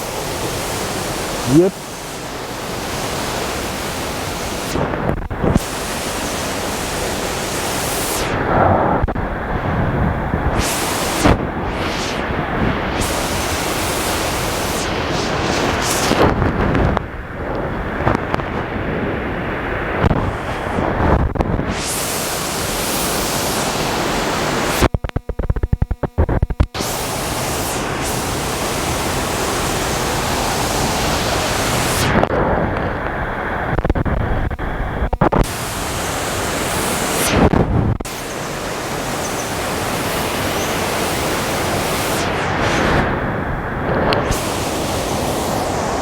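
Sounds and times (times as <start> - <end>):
waterfall roaring: 0.0 - 17.0, 21.8 - 24.8, 26.8 - 32.2, 35.4 - 37.3, 38.1 - 46.0.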